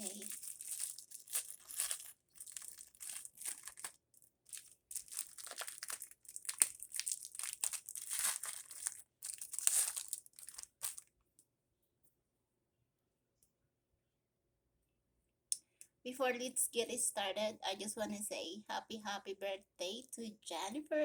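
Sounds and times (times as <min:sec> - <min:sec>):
plastic wrapping crumpling: 0:00.0 - 0:11.1.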